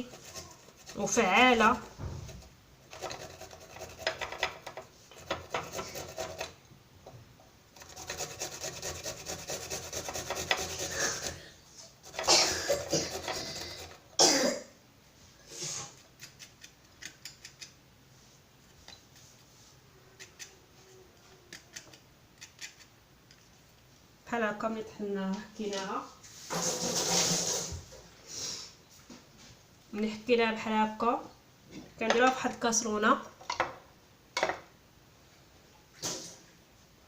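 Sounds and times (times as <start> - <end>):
garlic rasping on grater: 0.0 - 1.9, 2.9 - 6.6, 7.8 - 11.4, 12.0 - 14.0.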